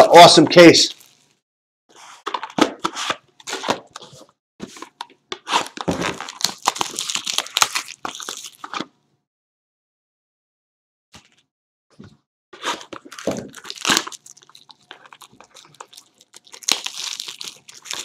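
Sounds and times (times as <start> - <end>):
shrink wrap tearing and crinkling: 0.9 - 1.3, 4.8 - 8.9, 12.6 - 18.0.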